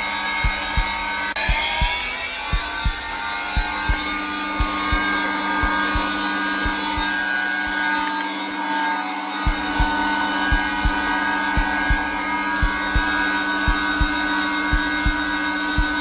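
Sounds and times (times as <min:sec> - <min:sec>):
heartbeat thumps: 0:00.0 - 0:07.8, 0:09.4 - 0:16.0
vacuum cleaner humming: 0:00.0 - 0:07.8, 0:09.4 - 0:16.0.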